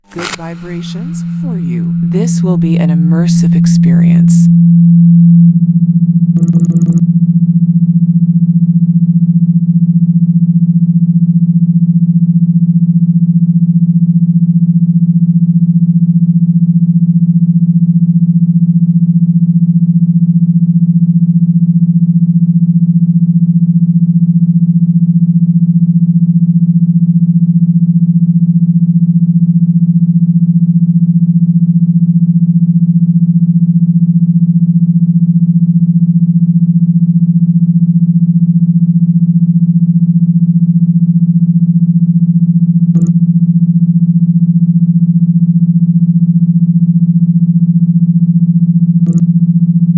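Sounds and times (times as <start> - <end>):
low vibration buzz: 0.0 - 8.8.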